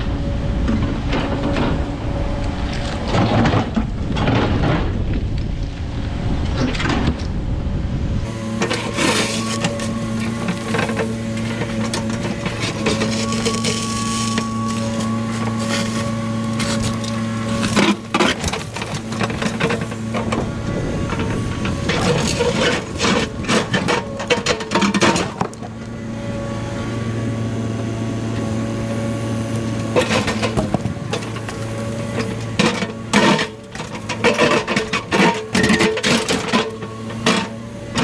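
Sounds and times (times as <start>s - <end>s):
excavator diesel engine running: 8.2s - 38.0s
bucket crunching and knocking debris: 8.3s - 26.2s, 29.9s - 37.5s.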